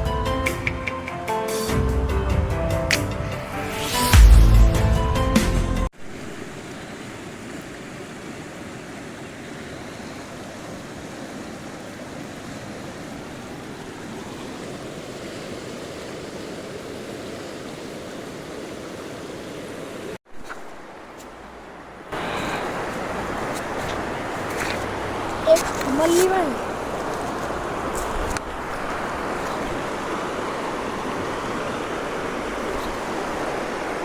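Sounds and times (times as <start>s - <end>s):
background music: 0.0s - 5.9s
river water rushing: 6.0s - 34.0s.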